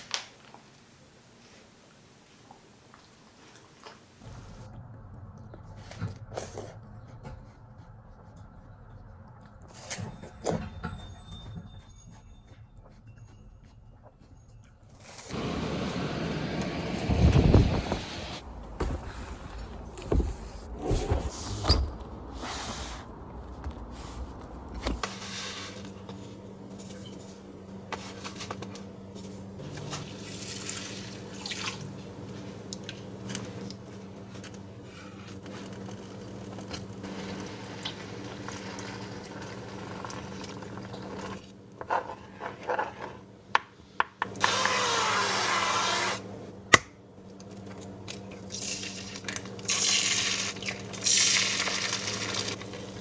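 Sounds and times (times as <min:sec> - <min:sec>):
water running from a tap: 0:48.5 - 0:53.0.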